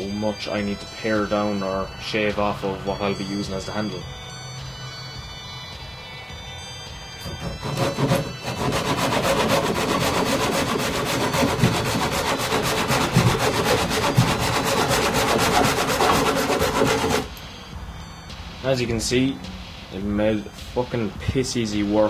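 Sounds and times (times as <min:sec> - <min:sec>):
hand saw cutting wood: 0:07.2 - 0:17.3.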